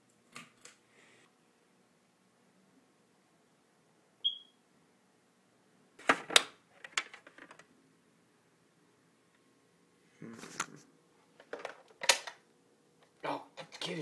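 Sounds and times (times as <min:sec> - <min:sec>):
smoke detector chirp: 0:04.2 - 0:04.6.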